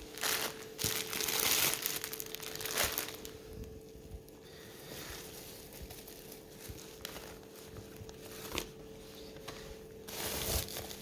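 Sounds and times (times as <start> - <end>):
packaging rustling: 0.0 - 3.8, 5.1 - 11.0.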